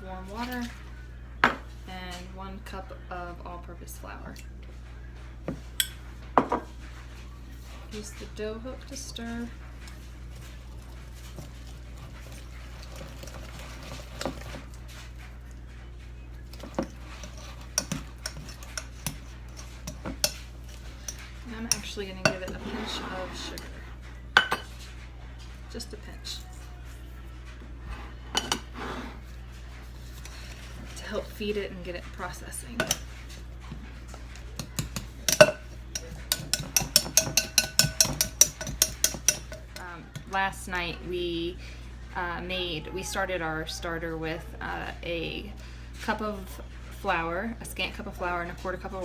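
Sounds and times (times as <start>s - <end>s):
utensil tapping against bowl: 16.5s - 22.5s, 34.6s - 40.3s
dough hook clinking against bowl: 34.6s - 39.9s.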